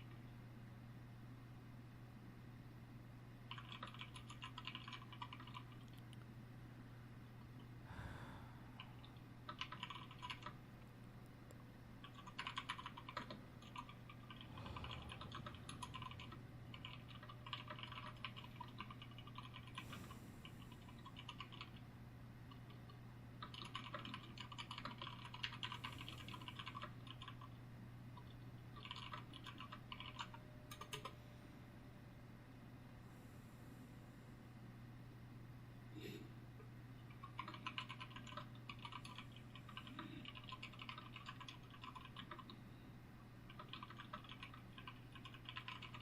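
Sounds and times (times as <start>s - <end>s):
faint low hum: 0.0s - 46.0s
keyboard typing: 3.5s - 6.1s, 8.8s - 10.6s, 12.0s - 21.8s, 22.5s - 27.6s, 28.2s - 31.2s, 37.0s - 42.6s, 43.5s - 46.0s.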